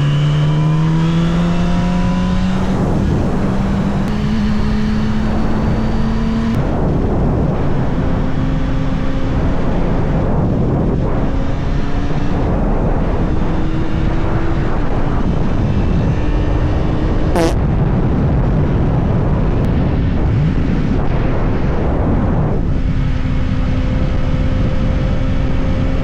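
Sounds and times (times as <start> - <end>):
faint engine drone: 0.0 - 18.6
wind and road noise: 0.0 - 26.0.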